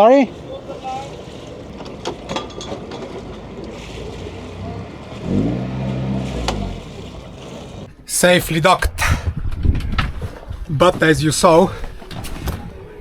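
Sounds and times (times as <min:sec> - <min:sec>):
diesel boat engine revving: 0:00.0 - 0:07.9
wind on microphone: 0:08.8 - 0:11.0.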